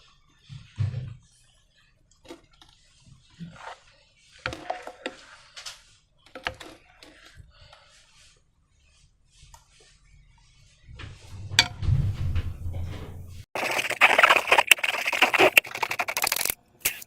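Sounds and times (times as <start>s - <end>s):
slime and balloons being handled: 13.6s - 16.5s.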